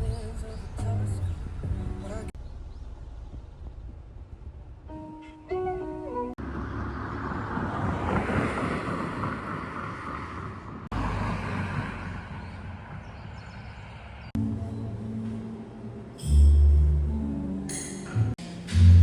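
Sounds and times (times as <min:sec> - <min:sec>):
wind buffeting microphone: 0:00.0 - 0:02.3, 0:03.1 - 0:04.9, 0:06.4 - 0:14.3
outdoor rushing noise: 0:06.4 - 0:14.4.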